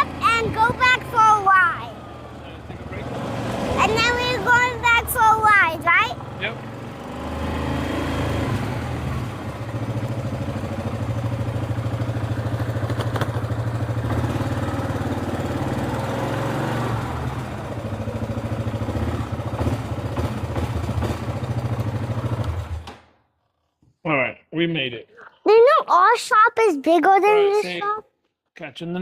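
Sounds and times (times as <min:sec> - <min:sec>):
atv engine running: 0:00.0 - 0:22.9.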